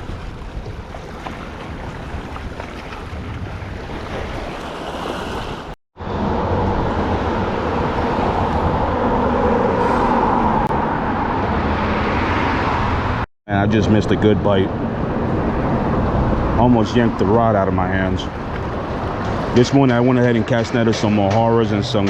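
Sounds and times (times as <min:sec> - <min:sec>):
water washing by: 0:00.0 - 0:05.8, 0:14.9 - 0:22.0
wind on microphone: 0:00.0 - 0:13.2.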